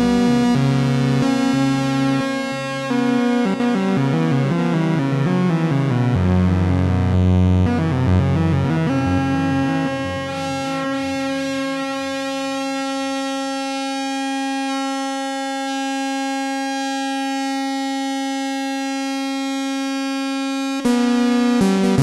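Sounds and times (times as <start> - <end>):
rhythmic arpeggiated synth pattern: 0.0 - 12.5
buzzy bass synthesizer note: 0.0 - 15.1, 19.0 - 22.0
low pulsing synth sequence: 5.5 - 12.4.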